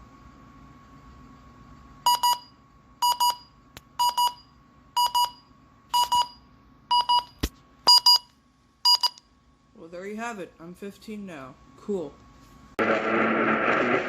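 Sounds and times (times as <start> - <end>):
electronic alarm beeping: 2.1 - 9.2.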